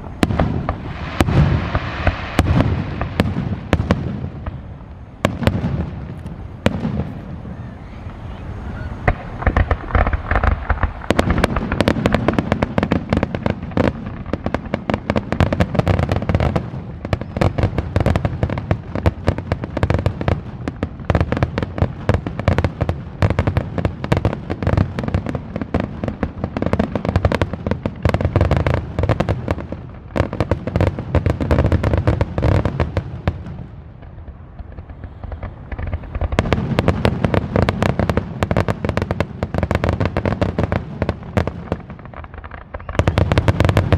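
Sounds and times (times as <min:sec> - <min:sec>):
fireworks booming and crackling: 0:00.0 - 0:43.9.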